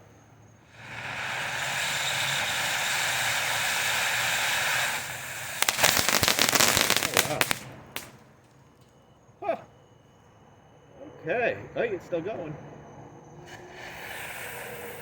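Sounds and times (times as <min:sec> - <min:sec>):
firework fountain hissing: 0:00.0 - 0:08.6, 0:13.4 - 0:15.0
rapid firework crackling: 0:00.7 - 0:08.4.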